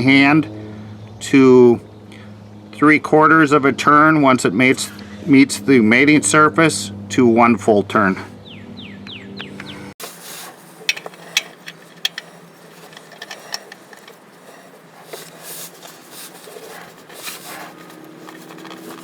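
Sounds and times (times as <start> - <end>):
small parts clicking and tapping: 9.6 - 19.0.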